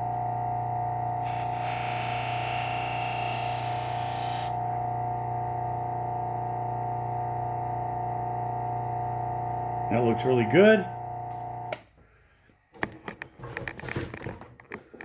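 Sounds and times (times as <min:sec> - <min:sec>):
knife rasping on abrasive wheel: 0:01.2 - 0:04.5.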